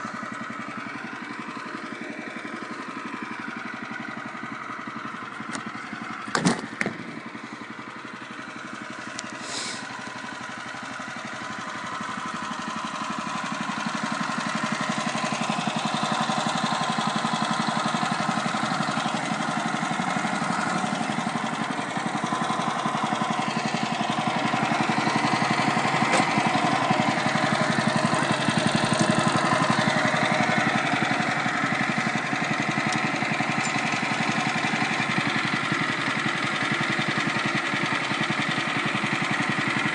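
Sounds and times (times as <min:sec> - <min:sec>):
sawmill engine cutting log: 0:09.1 - 0:09.8, 0:13.2 - 0:39.9.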